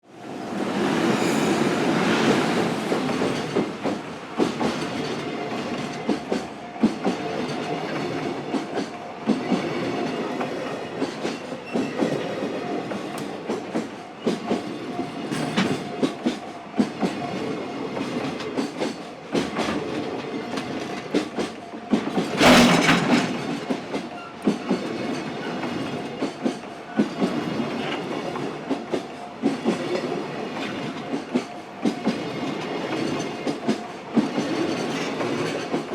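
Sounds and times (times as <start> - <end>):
steady train tone: 0.0 - 35.9
freight train wheels clacking: 0.2 - 35.9.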